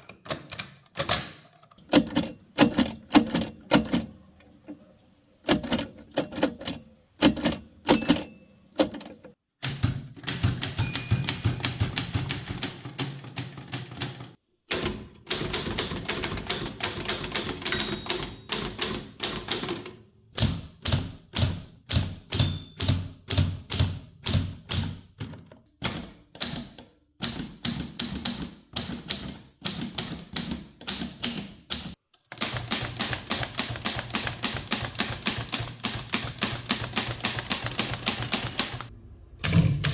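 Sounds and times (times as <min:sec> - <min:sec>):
typewriter keys clacking: 0:05.5 - 0:19.9, 0:20.9 - 0:38.9
typewriter bell ring: 0:07.9 - 0:09.4, 0:10.7 - 0:12.4, 0:17.6 - 0:19.0, 0:22.3 - 0:23.3, 0:37.1 - 0:38.9.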